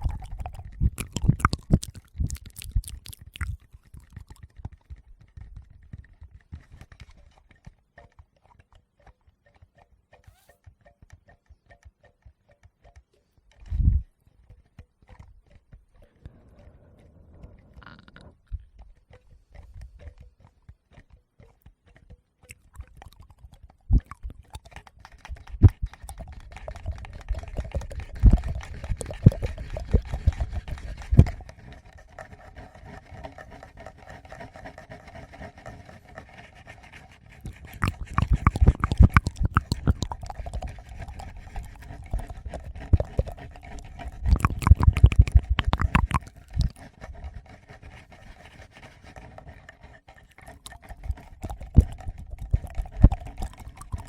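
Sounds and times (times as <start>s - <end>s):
fingers scratching microphones: 0.0s - 3.6s, 16.3s - 18.8s, 25.2s - 54.0s
wet mouth sounds: 0.0s - 7.2s, 10.1s - 10.6s, 13.6s - 54.0s.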